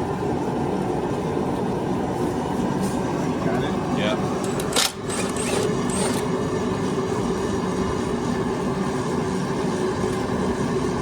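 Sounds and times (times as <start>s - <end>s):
steady machine hum: 0.0s - 11.0s.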